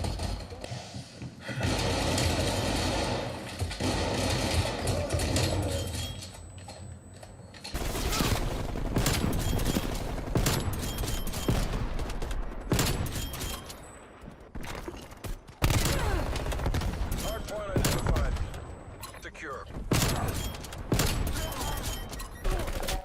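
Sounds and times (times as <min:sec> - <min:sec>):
video game automatic gunfire: 0:01.5 - 0:05.8, 0:07.8 - 0:13.1, 0:15.6 - 0:18.4.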